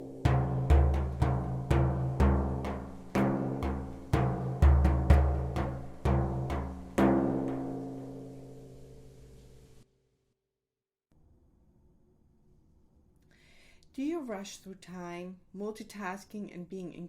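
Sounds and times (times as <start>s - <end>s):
low ringing drum strikes: 0.0s - 8.6s.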